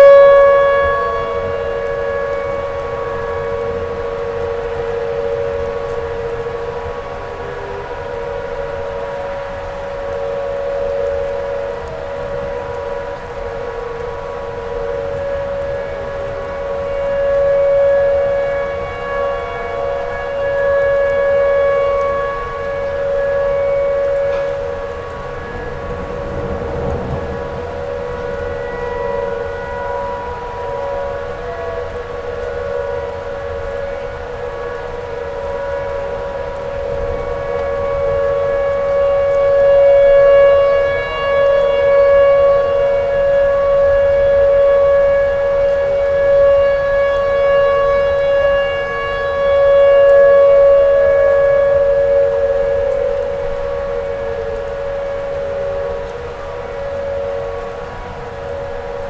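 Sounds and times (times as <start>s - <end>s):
tornado siren wailing: 0.0s - 59.0s
faint tone sliding down in pitch: 17.0s - 33.0s.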